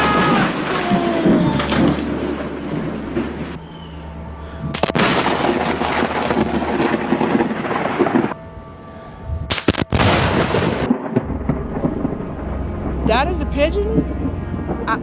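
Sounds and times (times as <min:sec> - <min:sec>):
rain: 0:00.0 - 0:08.4
thunder crack: 0:00.0 - 0:08.4, 0:09.3 - 0:15.0
thunder rumble: 0:00.0 - 0:15.0.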